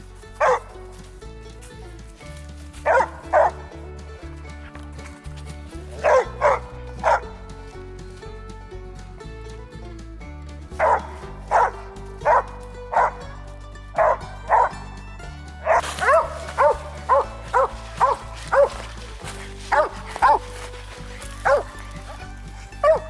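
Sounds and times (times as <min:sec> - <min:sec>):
background music: 0:00.0 - 0:23.0
dog barking: 0:00.4 - 0:00.8, 0:02.8 - 0:03.8, 0:05.9 - 0:07.4, 0:10.8 - 0:13.4, 0:14.0 - 0:14.9, 0:15.6 - 0:23.0.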